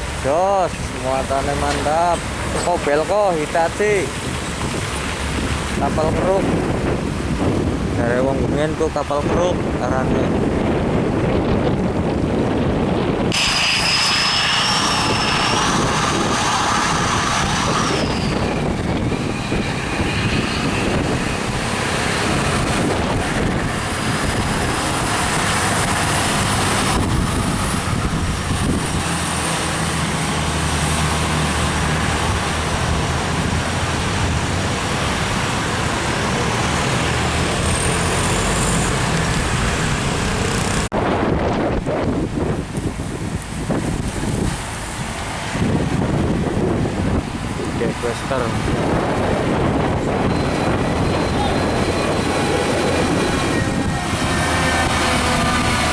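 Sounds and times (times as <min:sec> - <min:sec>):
deep steady engine drone: 0:00.0 - 0:41.1, 0:41.8 - 0:55.9
heavy trucks passing: 0:00.0 - 0:55.9
high whine: 0:11.4 - 0:45.0, 0:45.6 - 0:55.9.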